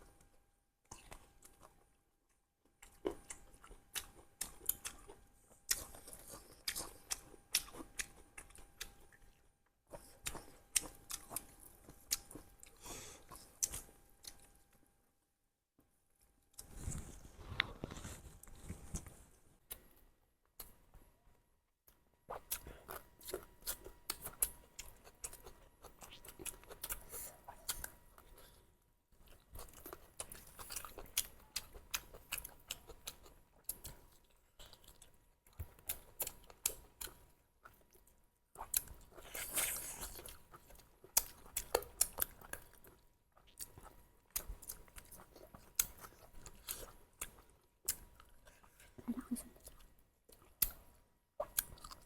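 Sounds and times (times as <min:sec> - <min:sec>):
close chewing with crunches: 0:02.6 - 0:14.6, 0:22.3 - 0:52.0.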